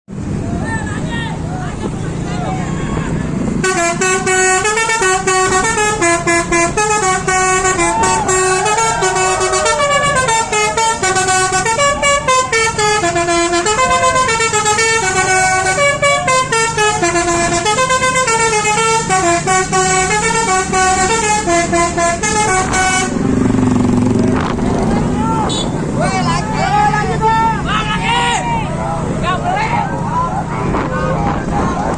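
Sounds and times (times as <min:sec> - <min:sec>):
musical bus horn: 0:03.0 - 0:23.4, 0:25.4 - 0:25.9.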